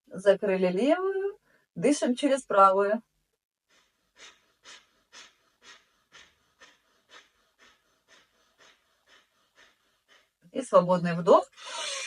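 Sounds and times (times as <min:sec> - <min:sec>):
rapid breathing through nostril: 0:03.6 - 0:10.6.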